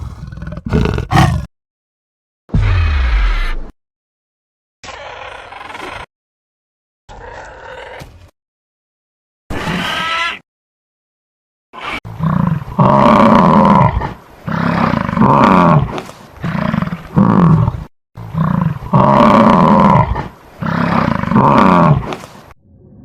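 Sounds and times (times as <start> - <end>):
large animal calling: 0.0 - 1.5.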